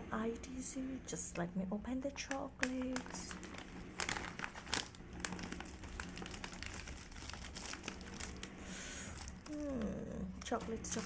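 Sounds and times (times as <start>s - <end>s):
wrapper crinkling: 2.2s - 11.0s.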